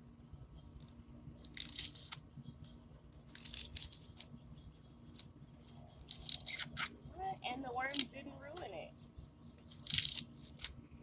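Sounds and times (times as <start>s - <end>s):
corn husks ripping: 1.5s - 2.2s, 3.2s - 4.3s, 6.0s - 7.0s, 9.6s - 10.8s.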